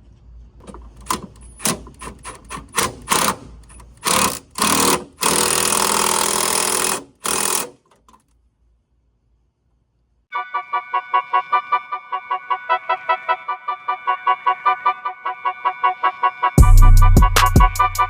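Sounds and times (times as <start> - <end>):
cordless drill whirring: 0.6 - 8.2
tool clicks and knocks: 0.6 - 8.2.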